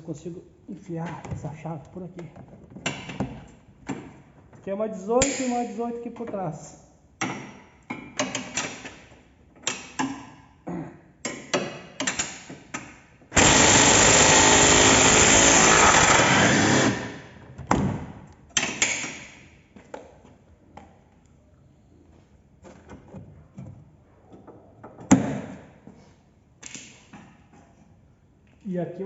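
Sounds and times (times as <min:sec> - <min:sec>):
power wrench running: 0:13.4 - 0:17.3.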